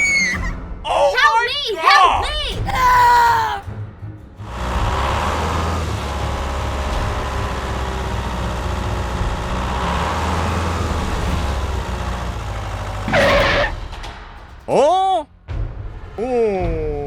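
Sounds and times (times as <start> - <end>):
engine running steadily: 4.4 - 14.2.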